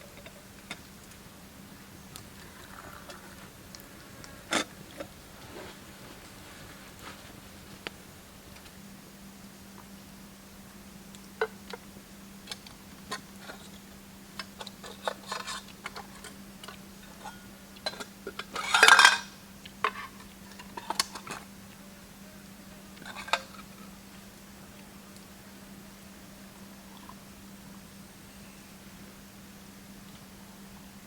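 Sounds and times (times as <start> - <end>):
metal cookware clinking: 17.2 - 19.3.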